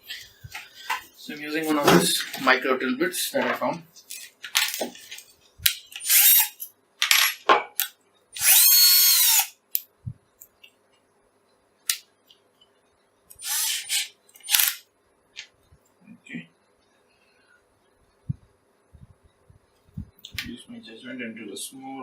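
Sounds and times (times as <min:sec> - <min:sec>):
electric drill spinning: 0:06.0 - 0:06.6, 0:08.4 - 0:09.6, 0:13.4 - 0:14.8.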